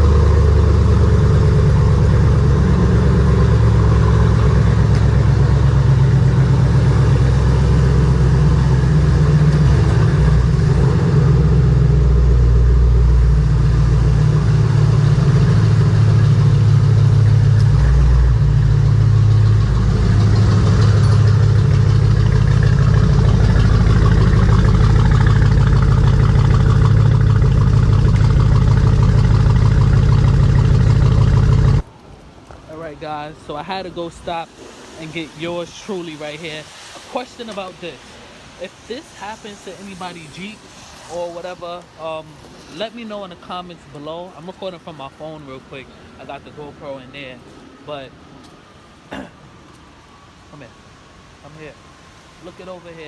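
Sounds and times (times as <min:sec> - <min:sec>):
car engine idling: 0:00.0 - 0:31.9.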